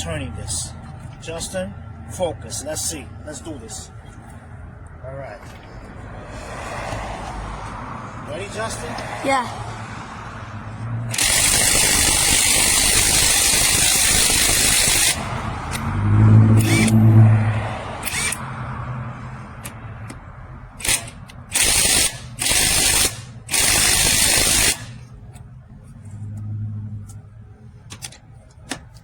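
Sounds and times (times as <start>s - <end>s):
impact wrench hammering: 11.1s - 15.8s, 20.8s - 25.0s
low hum: 15.2s - 20.8s.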